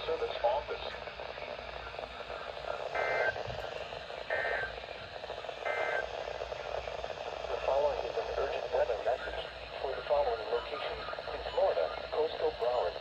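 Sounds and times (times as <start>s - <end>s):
radio static hiss: 0.0s - 13.0s
warbling digital data tones: 2.9s - 4.8s, 5.6s - 6.1s.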